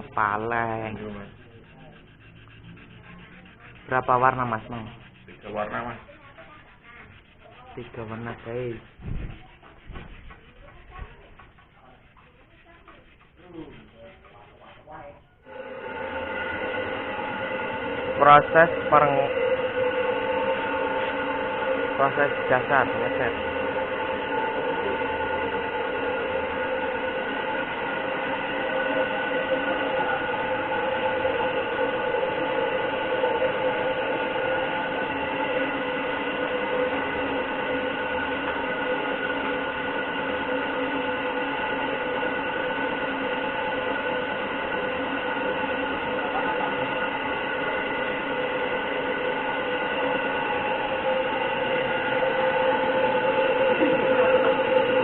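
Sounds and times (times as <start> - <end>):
air compressor running: 0.0 - 55.0.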